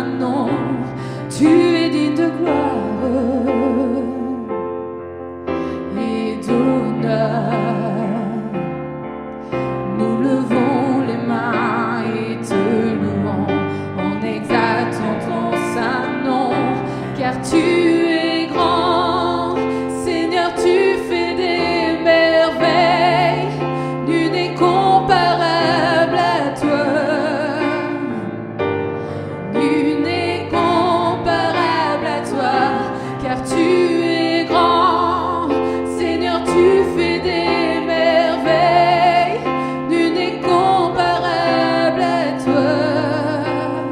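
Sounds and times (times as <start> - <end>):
women singing gospel duet: 0.0 - 4.5, 5.6 - 8.6, 9.6 - 28.4, 29.1 - 43.9
keyboard accompaniment: 0.0 - 43.9.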